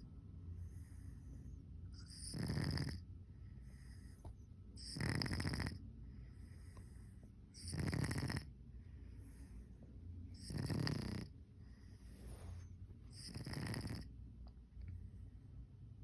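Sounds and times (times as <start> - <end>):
cat soft breathing: 0.3 - 2.3, 3.2 - 4.5, 6.0 - 7.6, 8.6 - 10.1, 11.5 - 13.4
cat snoring: 1.9 - 3.1, 4.8 - 8.5, 10.3 - 11.4, 12.2 - 14.1.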